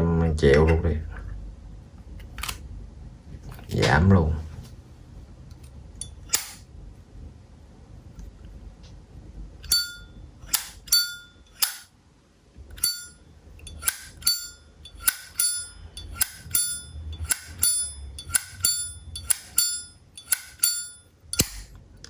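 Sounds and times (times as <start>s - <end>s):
lighter lid clicking open and shut: 21.4s - 21.7s.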